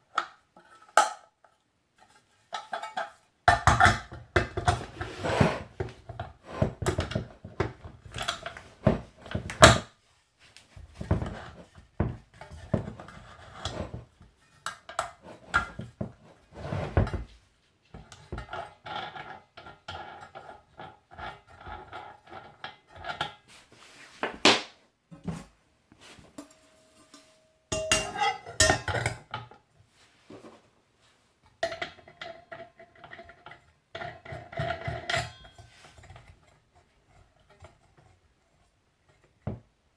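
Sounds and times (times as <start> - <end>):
plastic and metal parts clunking: 2.6 - 9.9.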